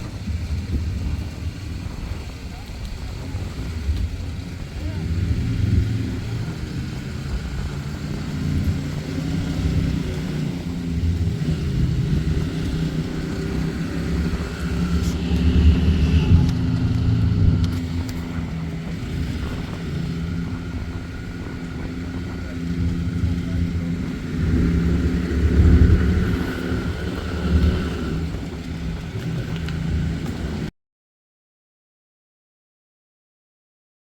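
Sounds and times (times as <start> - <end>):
atv engine revving: 0.0 - 30.7.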